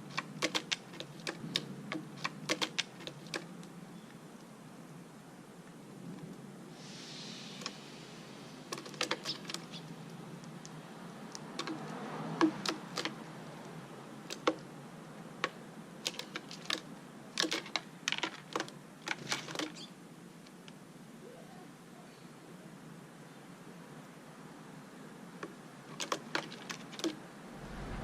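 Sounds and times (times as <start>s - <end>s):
short hiss: 6.8s - 8.7s.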